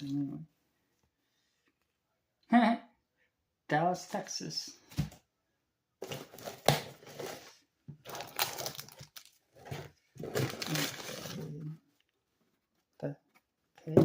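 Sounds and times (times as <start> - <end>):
packaging crinkling and rustling: 6.0 - 12.1.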